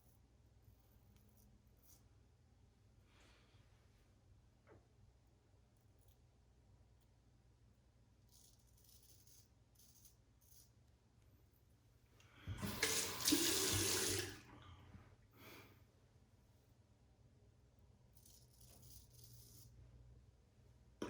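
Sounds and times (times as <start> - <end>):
tap running into sink: 12.5 - 14.4.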